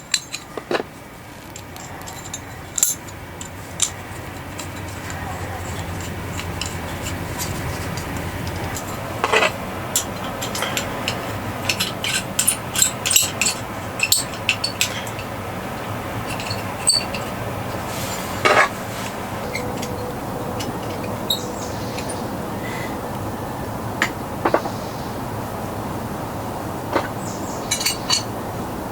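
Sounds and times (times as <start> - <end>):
steady background noise: 0.0 - 28.9
metal cookware clinking: 2.0 - 18.8, 26.9 - 28.3
metal scrapes: 3.6 - 15.4, 16.1 - 23.0.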